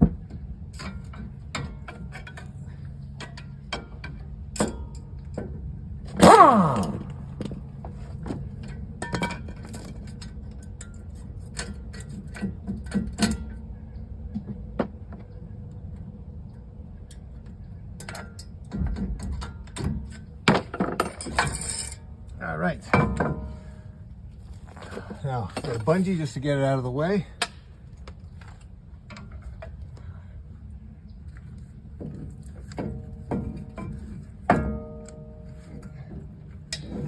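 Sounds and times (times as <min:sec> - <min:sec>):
metal clicks and clanks: 0:00.7 - 0:07.6, 0:08.2 - 0:13.7, 0:17.0 - 0:23.6.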